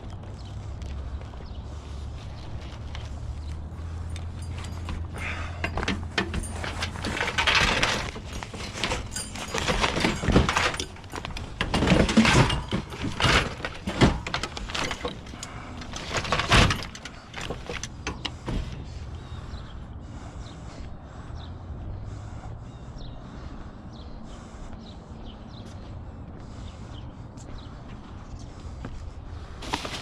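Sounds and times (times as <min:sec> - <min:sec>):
clattering of metal and plastic items: 0:04.2 - 0:19.0, 0:29.6 - 0:30.0.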